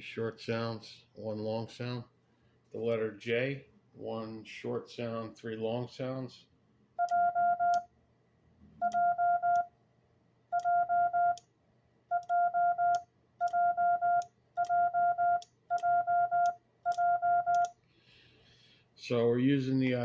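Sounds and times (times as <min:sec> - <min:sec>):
morse code beeps: 0:07.0 - 0:07.9, 0:08.8 - 0:09.7, 0:10.5 - 0:11.4, 0:12.1 - 0:17.7.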